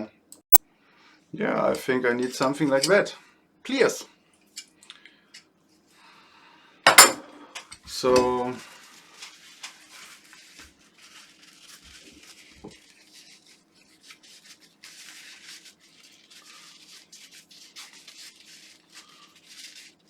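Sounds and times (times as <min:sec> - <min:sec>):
hands rubbing and scraping material: 0:07.9 - 0:20.0.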